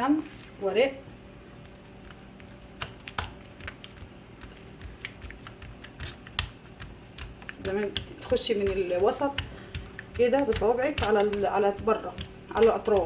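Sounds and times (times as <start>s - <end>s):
faint steady hum: 0.0s - 13.0s
hands pressing dough taps: 2.7s - 13.0s.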